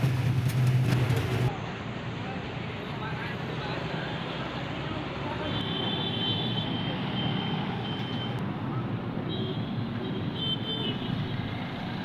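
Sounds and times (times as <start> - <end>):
car engine running: 0.0 - 1.5.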